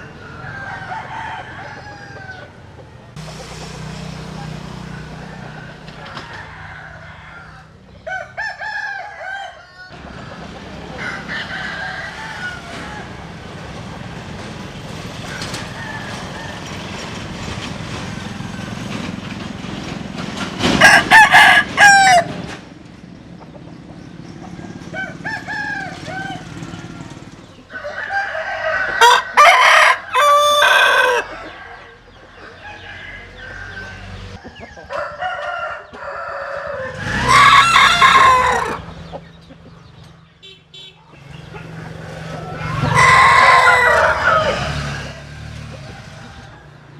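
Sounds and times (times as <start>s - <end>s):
rooster crowing: 0.0s - 2.6s, 4.4s - 13.4s, 15.3s - 16.9s, 20.8s - 22.4s, 24.6s - 38.8s, 41.6s - 46.9s.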